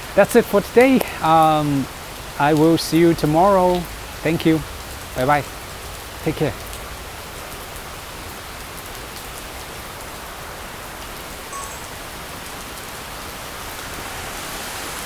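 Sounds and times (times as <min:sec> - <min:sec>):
close drips ticking: 0:00.0 - 0:07.9
hard rain falling: 0:00.0 - 0:15.0
faint electronic chirp: 0:11.5 - 0:12.4.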